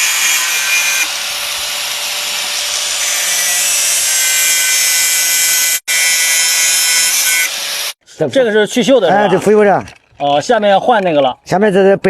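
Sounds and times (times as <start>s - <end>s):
electric grinder grinding steel: 0.0s - 8.0s.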